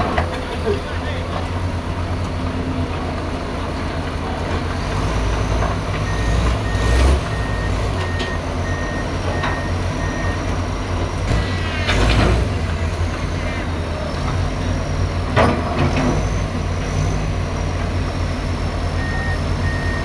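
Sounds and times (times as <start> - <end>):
excavator diesel engine running: 0.0 - 20.0
backup alarm beeping: 6.1 - 11.2, 19.0 - 20.0.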